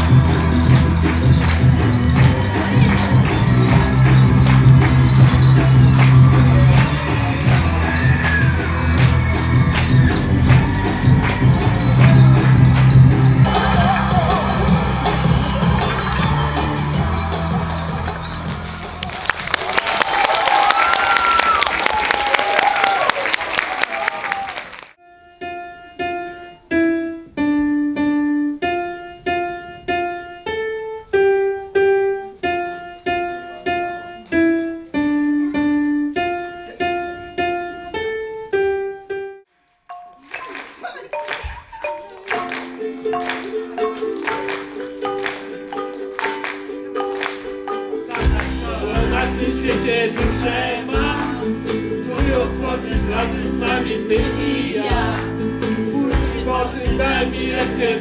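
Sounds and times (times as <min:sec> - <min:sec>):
bass guitar: 0:00.0 - 0:19.2, 0:48.2 - 0:58.0
guitar: 0:00.0 - 0:19.2, 0:42.3 - 0:58.0
piano melody: 0:00.0 - 0:20.6, 0:25.0 - 0:58.0.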